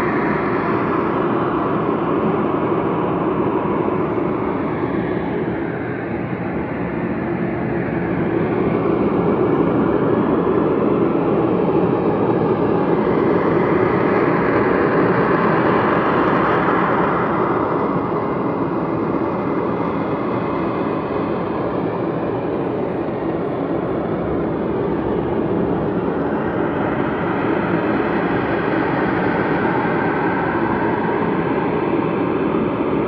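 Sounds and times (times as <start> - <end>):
loud low drone: 20.8 - 31.4.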